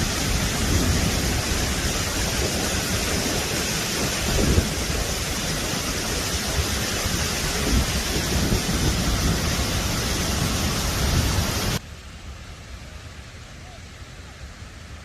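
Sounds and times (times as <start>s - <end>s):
waterfall rushing: 0.0s - 11.8s.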